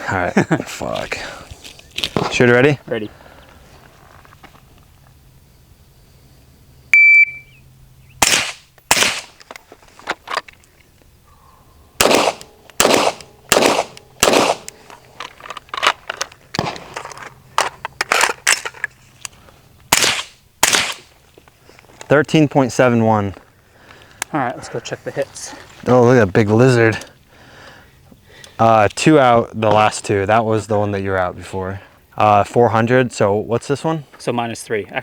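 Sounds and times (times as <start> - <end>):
shot timer beep: 6.9 - 7.6
lighter gunshot cracks: 8.2 - 9.4, 12.0 - 14.8, 19.9 - 21.1
quick pistol shots: 8.2 - 9.4, 12.0 - 14.8, 19.9 - 21.1
rifle shots: 8.2 - 9.4, 12.0 - 14.8, 16.6 - 17.0, 19.9 - 21.1.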